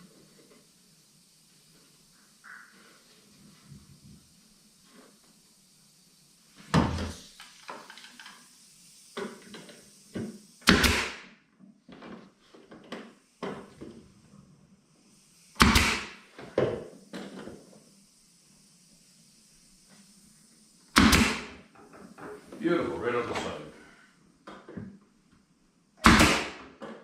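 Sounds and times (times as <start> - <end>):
nail gun firing into wood: 10.6 - 11.3, 15.6 - 16.2, 20.9 - 21.6, 26.0 - 26.8.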